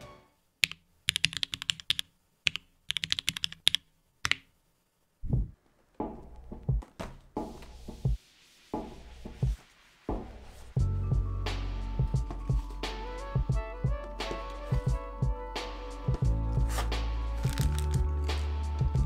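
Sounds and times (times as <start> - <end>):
mechanical keyboard typing: 0.6 - 4.5, 17.5 - 18.0
dull thumps and knocks: 5.2 - 7.7.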